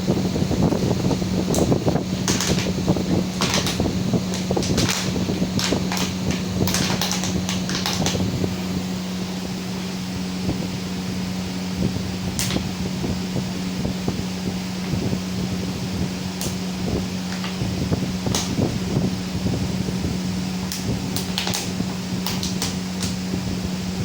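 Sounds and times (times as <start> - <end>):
electrical hum: 0.0 - 24.0
plastic bottle crackling: 2.2 - 2.8, 3.4 - 8.3.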